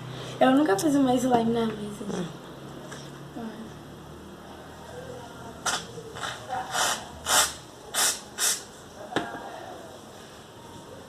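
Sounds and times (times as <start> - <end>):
short hissing bursts: 5.7 - 8.7.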